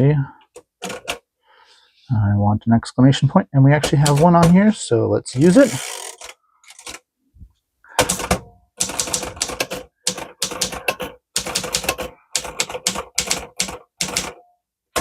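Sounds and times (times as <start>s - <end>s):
typewriter keystrokes: 8.0s - 14.4s.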